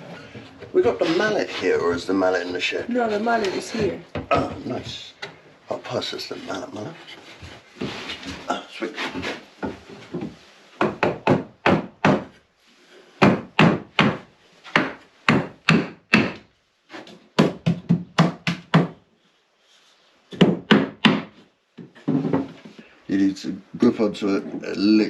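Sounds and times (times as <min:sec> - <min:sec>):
mallet striking wood: 0:13.2 - 0:16.4, 0:17.4 - 0:19.0.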